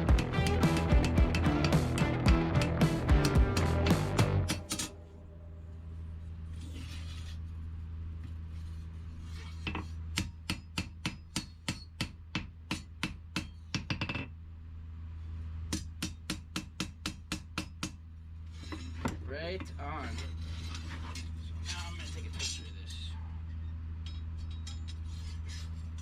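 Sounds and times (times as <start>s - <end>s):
hammer blows on steel anvil: 0.0s - 5.3s
steady low hum: 0.0s - 9.4s.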